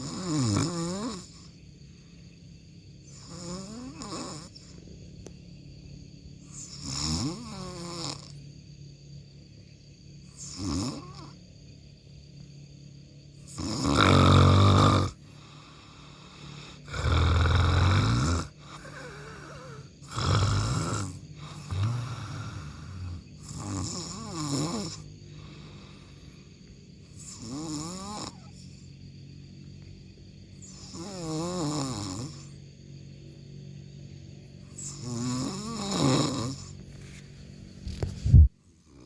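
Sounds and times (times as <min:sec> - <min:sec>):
person snoring: 0:00.0 - 0:01.5, 0:03.1 - 0:04.6, 0:06.5 - 0:08.3, 0:10.4 - 0:11.4, 0:13.5 - 0:26.2, 0:27.2 - 0:28.5, 0:30.7 - 0:32.5, 0:34.8 - 0:36.7.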